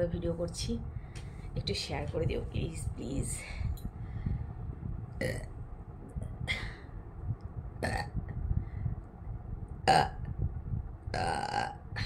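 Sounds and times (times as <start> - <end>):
woman belching: 5.2 - 5.5, 7.8 - 8.2, 9.9 - 10.3, 11.1 - 12.0.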